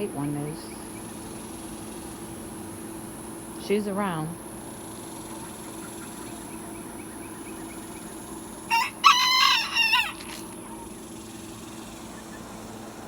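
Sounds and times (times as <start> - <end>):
rooster crowing: 8.6 - 10.9.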